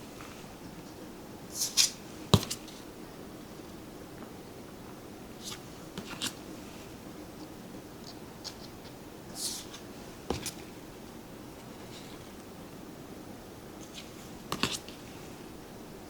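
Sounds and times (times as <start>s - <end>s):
cards sliding swishes: 1.5s - 2.8s.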